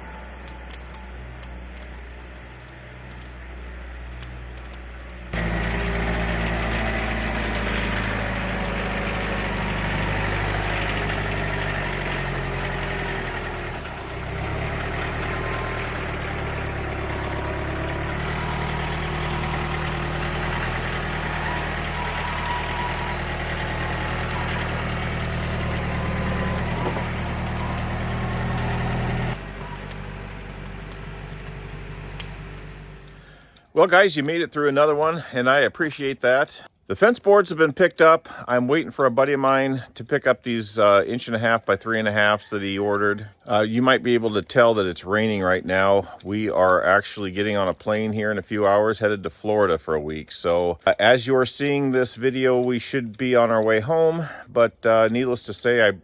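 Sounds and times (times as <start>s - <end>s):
motor engine running: 0.0s - 33.6s.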